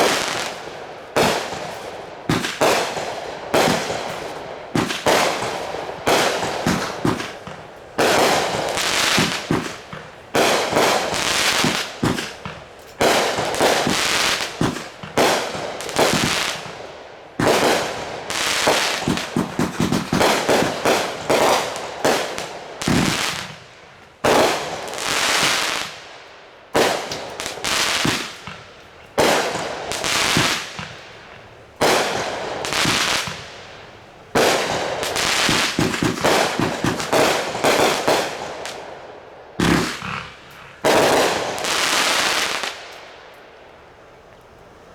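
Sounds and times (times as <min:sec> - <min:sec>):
fireworks bangs: 0:00.0 - 0:43.7.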